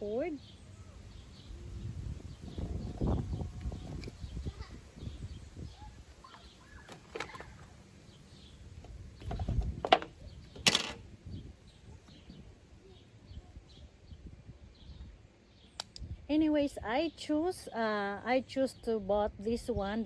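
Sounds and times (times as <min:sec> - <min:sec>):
dull rumble: 0:01.0 - 0:07.8, 0:08.4 - 0:12.5
handling clicks and knocks: 0:06.3 - 0:07.8, 0:08.8 - 0:11.1.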